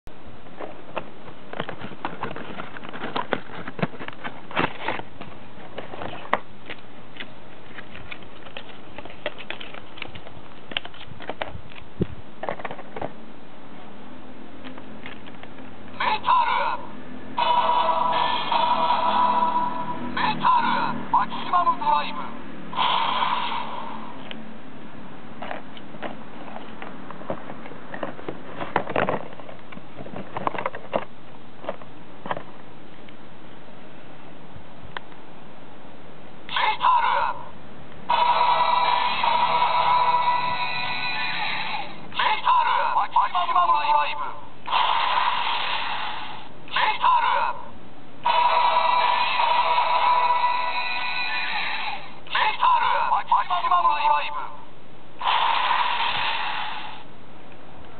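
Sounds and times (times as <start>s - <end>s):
steady hiss: 55.2s - 57.2s.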